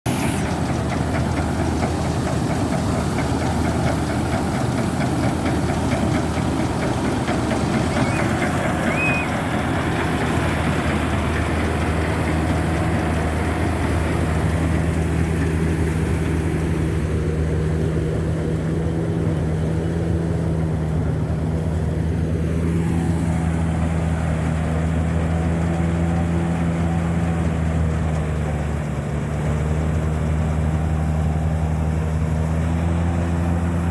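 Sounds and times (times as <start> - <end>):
tractor diesel engine running: 0.0 - 33.9
high-pitched machine noise: 7.1 - 11.4.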